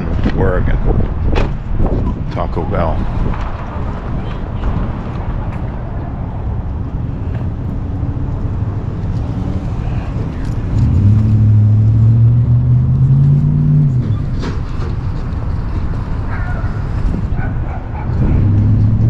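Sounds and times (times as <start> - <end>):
vehicle engine and road rumble: 0.0 - 19.0
engine accelerating: 8.4 - 15.0, 18.1 - 19.0.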